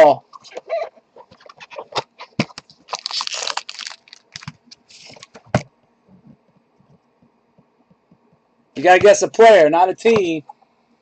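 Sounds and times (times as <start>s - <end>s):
crinkling: 0.4s - 5.6s.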